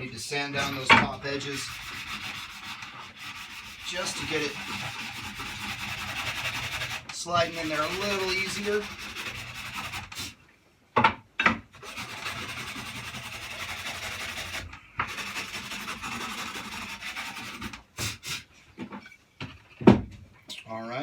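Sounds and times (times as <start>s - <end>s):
sanding wooden block: 1.2s - 10.4s, 11.8s - 18.4s.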